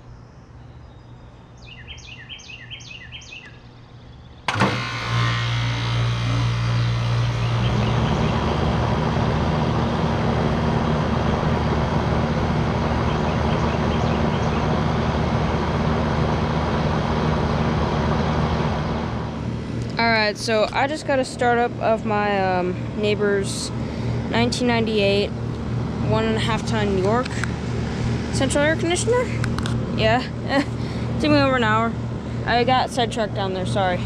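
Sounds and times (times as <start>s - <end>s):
bird chirping: 0.0s - 4.5s
air conditioner hum: 0.0s - 34.0s
condenser fan whoosh: 4.5s - 34.0s.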